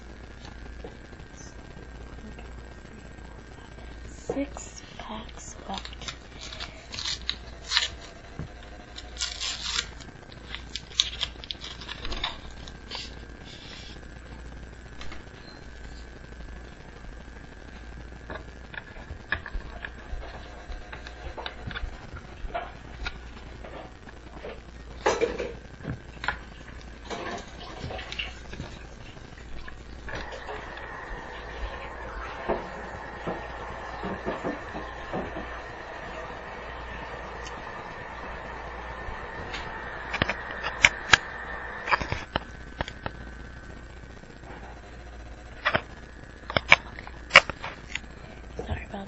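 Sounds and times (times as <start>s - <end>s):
low steady hum: 0.0s - 49.0s
paper rustling and tearing: 6.0s - 8.1s, 9.2s - 13.8s.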